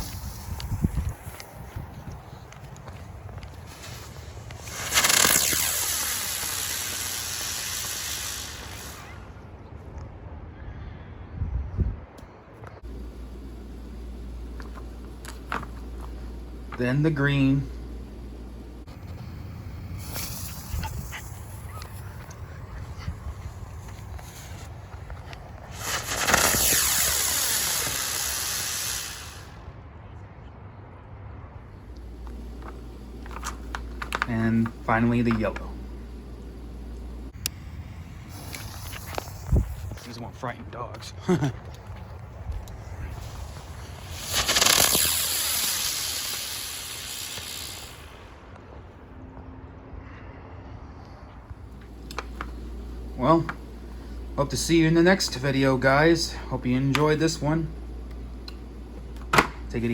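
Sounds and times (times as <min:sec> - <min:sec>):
firework hiss: 0:00.0 - 0:02.5, 0:03.6 - 0:09.4, 0:12.8 - 0:29.7, 0:31.9 - 0:40.2, 0:42.3 - 0:48.5, 0:51.6 - 0:59.9
spinning firework whine: 0:00.0 - 0:09.6, 0:12.8 - 0:29.8, 0:31.7 - 0:48.9, 0:51.4 - 0:59.9.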